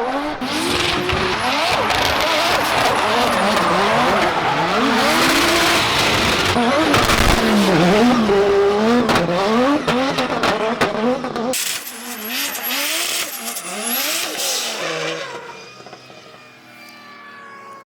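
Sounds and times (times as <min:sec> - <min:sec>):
car engine revving hard: 0:00.0 - 0:16.3
tyres squealing: 0:00.5 - 0:06.6.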